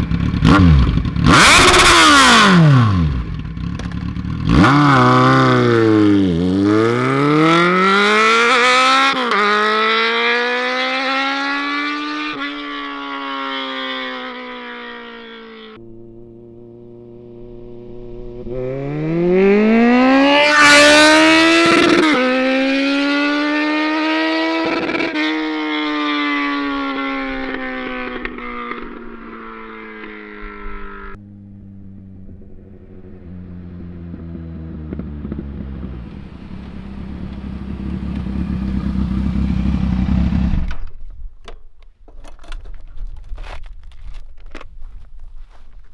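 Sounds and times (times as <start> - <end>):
motorcycle engine revving: 0.0 - 41.0
light clicks and scuffs: 42.7 - 45.9.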